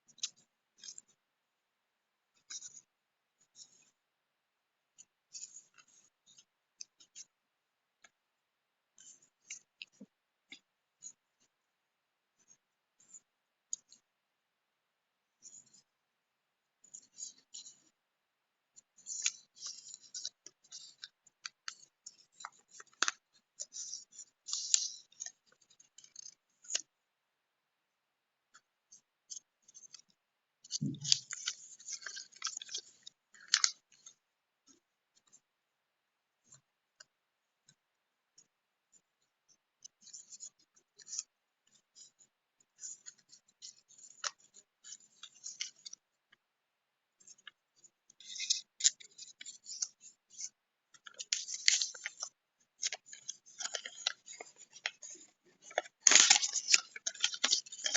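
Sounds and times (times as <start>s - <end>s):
small clicks and ticks: 0.0s - 1.2s, 2.3s - 4.0s, 5.0s - 7.4s, 9.0s - 11.5s, 12.4s - 14.1s, 15.4s - 15.9s, 16.8s - 18.0s, 18.7s - 27.0s, 28.5s - 35.5s, 36.4s - 46.4s, 47.2s - 57.9s
paper rustling: 30.6s - 34.1s, 48.2s - 57.9s.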